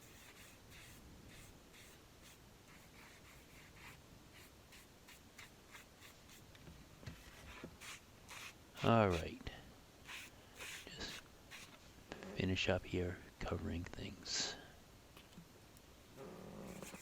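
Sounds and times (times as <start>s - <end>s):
sponge scrubbing glue on rubber: 7.2s - 9.3s, 10.0s - 11.8s, 16.7s - 17.0s.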